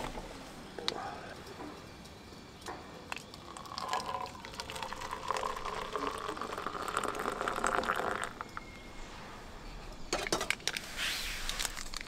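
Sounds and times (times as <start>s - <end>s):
water pouring into vessel: 3.2s - 8.4s.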